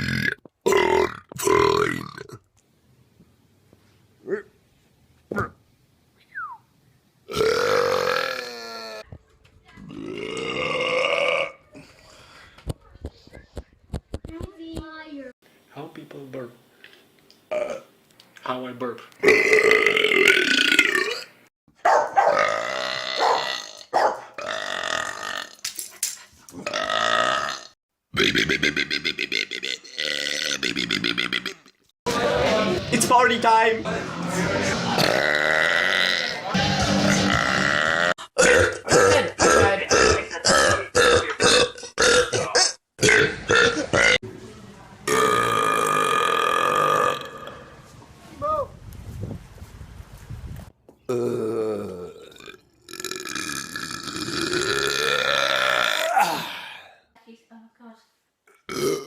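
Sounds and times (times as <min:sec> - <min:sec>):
person belching: 0:00.0 - 0:02.5, 0:07.3 - 0:09.0, 0:09.9 - 0:11.8, 0:17.5 - 0:17.9, 0:19.2 - 0:21.4, 0:22.3 - 0:25.6, 0:26.6 - 0:31.8, 0:35.0 - 0:44.2, 0:45.1 - 0:47.7, 0:51.1 - 0:56.9, 0:58.5 - 0:59.0
person burping: 0:00.0 - 0:02.5, 0:07.3 - 0:09.0, 0:09.9 - 0:11.9, 0:17.5 - 0:17.9, 0:19.2 - 0:21.4, 0:22.3 - 0:25.6, 0:26.6 - 0:31.8, 0:35.0 - 0:44.2, 0:45.1 - 0:47.7, 0:51.1 - 0:57.0, 0:58.5 - 0:59.0.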